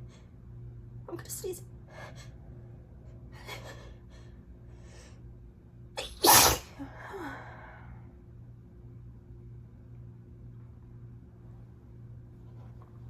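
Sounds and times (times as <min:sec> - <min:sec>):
person sneezing: 0:06.0 - 0:06.8
breathy in-breaths: 0:06.8 - 0:08.1.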